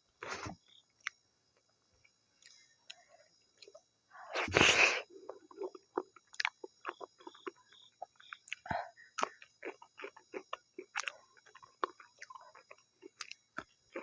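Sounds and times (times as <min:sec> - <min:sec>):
wet chewing clicks: 0:05.2 - 0:14.0.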